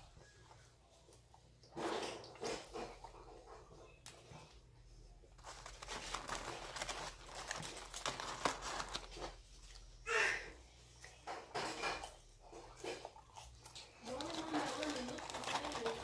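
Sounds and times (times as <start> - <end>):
crunching and chewing food: 0.0 - 16.0
wrapper crinkling: 5.3 - 9.9, 13.8 - 16.0.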